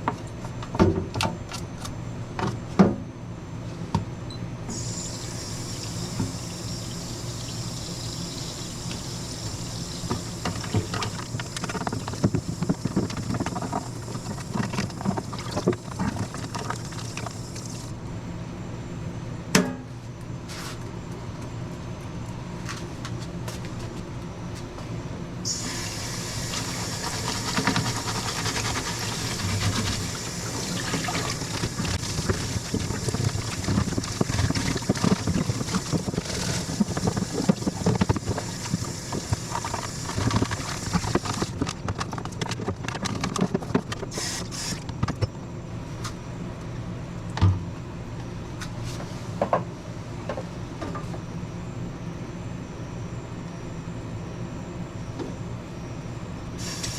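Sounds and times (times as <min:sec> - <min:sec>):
water running and splashing: 0:25.6 - 0:41.5.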